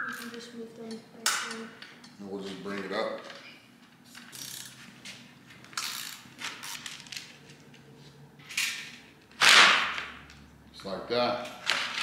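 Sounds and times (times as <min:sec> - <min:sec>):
hand ratchet clicking: 0:05.8 - 0:06.8.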